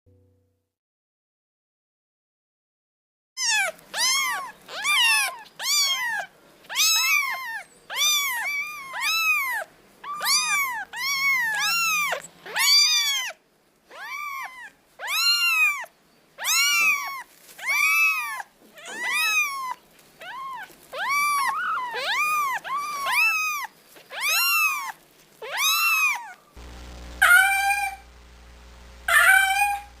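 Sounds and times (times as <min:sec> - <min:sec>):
cat meowing: 0:03.4 - 0:26.5, 0:27.1 - 0:28.2, 0:29.1 - 0:30.0
low steady hum: 0:26.6 - 0:30.0.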